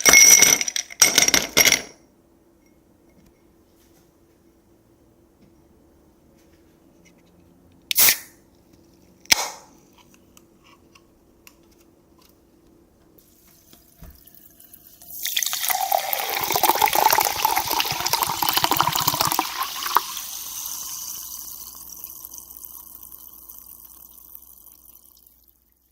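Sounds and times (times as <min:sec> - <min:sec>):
soda fizzing: 0:13.2 - 0:25.9
soda pouring over ice: 0:13.3 - 0:25.9.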